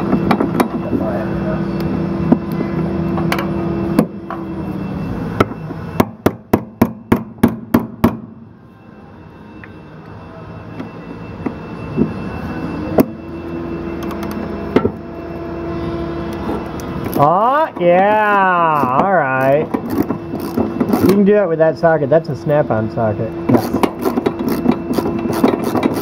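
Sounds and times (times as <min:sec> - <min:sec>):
steady machine hum: 0:00.0 - 0:26.0
hammer striking metal: 0:05.4 - 0:08.4.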